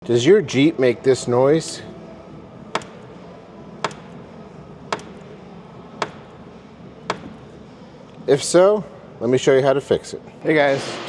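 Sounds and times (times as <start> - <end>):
car door check clicking: 2.7 - 3.2, 3.8 - 5.4, 6.0 - 6.4, 7.0 - 7.6.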